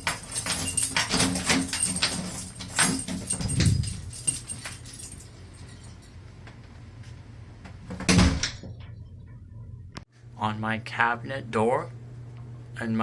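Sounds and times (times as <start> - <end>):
door hardware rattling and clicking: 0.0 - 5.2.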